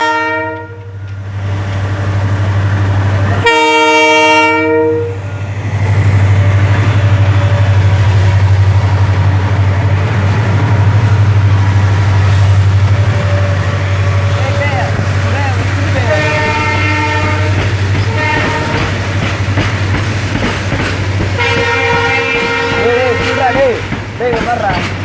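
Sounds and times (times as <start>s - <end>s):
train chord horn: 0.0s - 1.0s, 3.4s - 5.3s, 16.0s - 19.0s, 21.4s - 23.8s
diesel locomotive engines droning: 0.0s - 25.0s.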